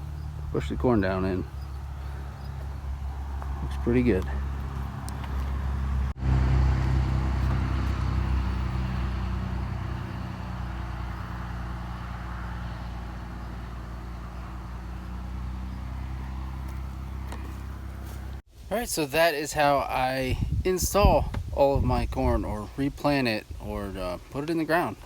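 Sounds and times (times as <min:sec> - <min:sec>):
low motor hum: 0:00.0 - 0:18.4.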